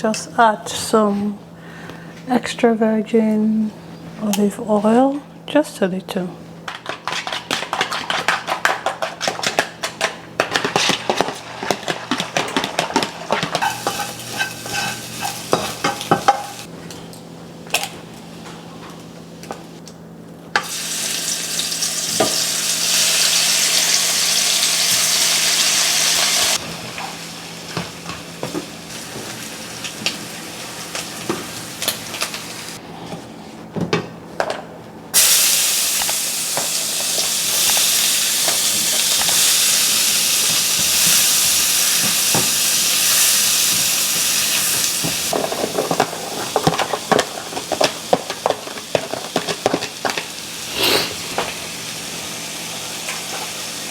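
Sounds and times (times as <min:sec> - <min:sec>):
food sizzling in hot oil: 0:13.6 - 0:16.7, 0:20.6 - 0:27.8, 0:35.2 - 0:45.4.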